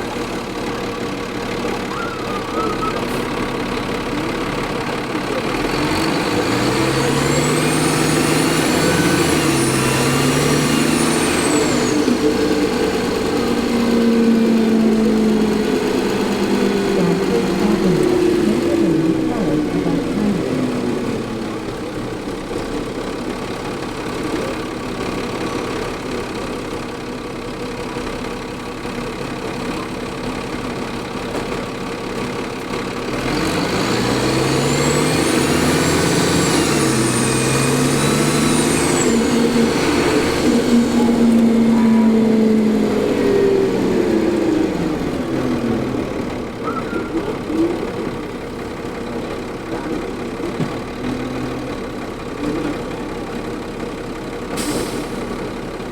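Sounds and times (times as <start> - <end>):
bus diesel engine: 0.0 - 55.9
turbocharger whine: 5.6 - 22.5, 33.8 - 47.6.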